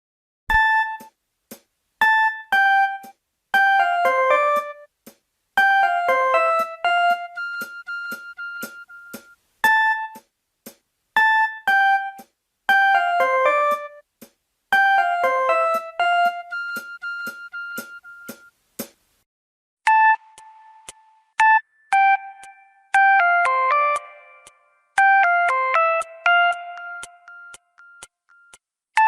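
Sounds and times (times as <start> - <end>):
phone ringtone melody: 2.0 - 4.9, 5.6 - 10.2, 11.2 - 14.0, 14.7 - 18.5, 19.9 - 28.5.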